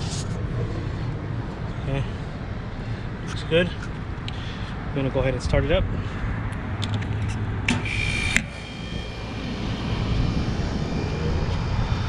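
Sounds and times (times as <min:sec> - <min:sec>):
compressor clicks: 0:07.7 - 0:10.6
compressor motor hum: 0:07.7 - 0:12.0.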